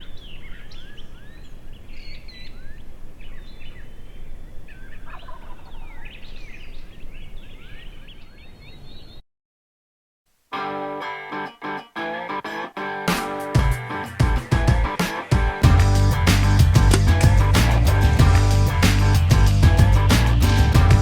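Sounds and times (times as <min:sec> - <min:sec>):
songbirds chirping: 0:00.0 - 0:09.2
turkey gobbling: 0:05.1 - 0:05.8.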